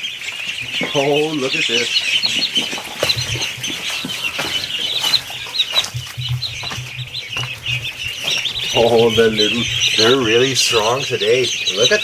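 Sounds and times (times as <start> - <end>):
ducklings peeping: 0.0 - 12.0
scattered knocks: 3.0 - 11.2.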